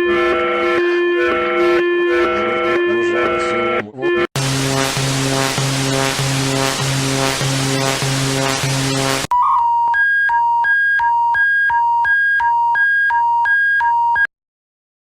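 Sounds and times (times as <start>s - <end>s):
alternating electronic beep: 4.4s - 9.3s
harsh buzzing alarm tone: 4.4s - 9.3s.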